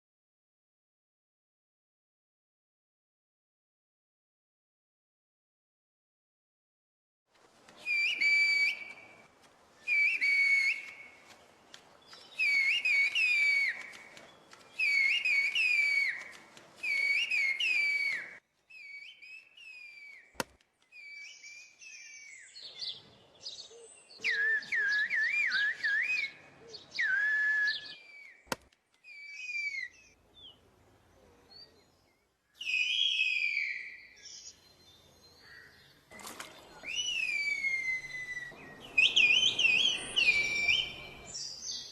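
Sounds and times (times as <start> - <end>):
person whistling phrases: 9.9 - 11.0, 27.0 - 28.0
sharp clicks: 13.1 - 15.0.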